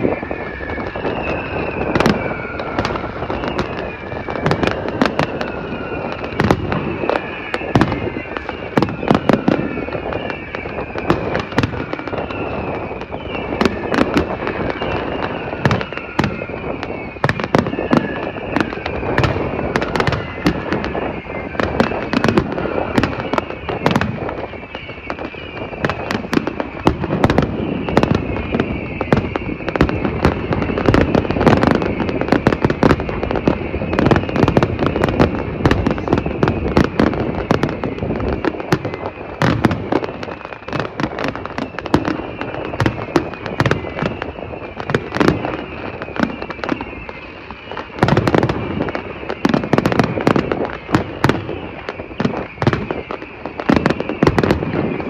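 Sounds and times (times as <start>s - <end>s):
fireworks bangs and crackles: 0.0s - 55.0s
high whistling of fireworks: 0.0s - 55.0s.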